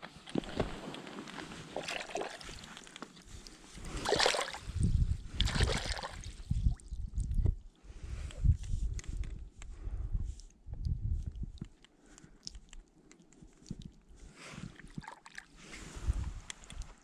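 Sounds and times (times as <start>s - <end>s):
water splashing and sloshing: 0.2s - 7.3s, 13.7s - 16.9s
loud splashes: 4.0s - 4.6s.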